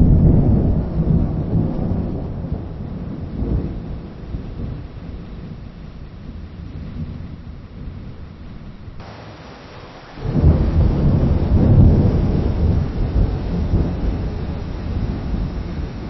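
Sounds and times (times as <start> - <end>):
distant thunder rumbling: 0.0 - 16.0
faint hiss: 8.2 - 11.3.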